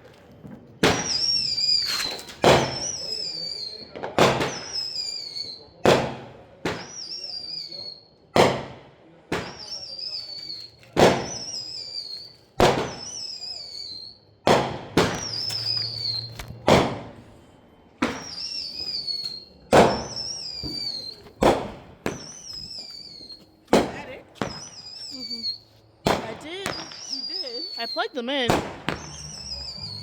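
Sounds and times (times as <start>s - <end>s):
fireworks banging: 0.4s - 5.0s, 8.4s - 13.5s, 14.4s - 30.0s
fireworks whistle sliding down: 15.3s - 16.5s, 18.2s - 21.2s, 28.9s - 30.0s.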